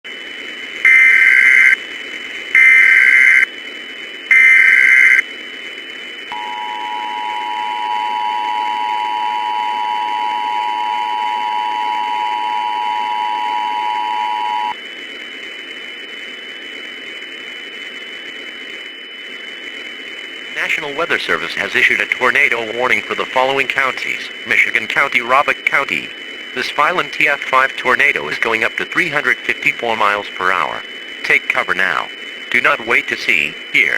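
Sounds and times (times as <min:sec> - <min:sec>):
faint steady high tone: 0:06.3 - 0:14.7
buzzy data bursts: 0:20.5 - 0:33.9.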